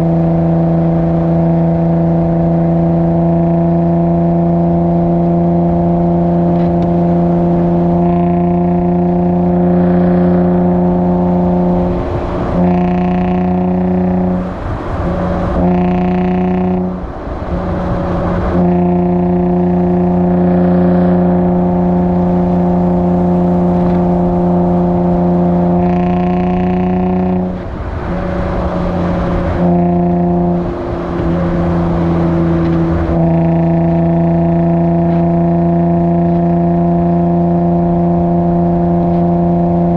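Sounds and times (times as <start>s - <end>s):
car exhaust drone: 0.0s - 39.9s
exhaust crackling and pops: 0.0s - 39.9s.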